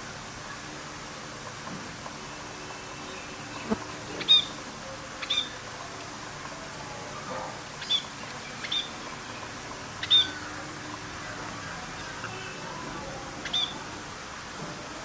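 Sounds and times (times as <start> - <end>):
steady background hiss: 0.0 - 15.0
bird chirping: 10.0 - 10.6, 13.4 - 13.8.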